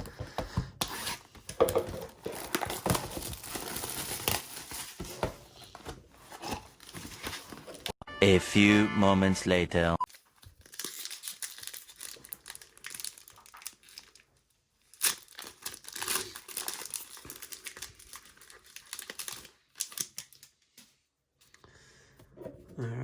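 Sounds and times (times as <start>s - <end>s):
plastic wrappers crinkling and tearing: 1.9s - 5.8s, 10.1s - 20.9s.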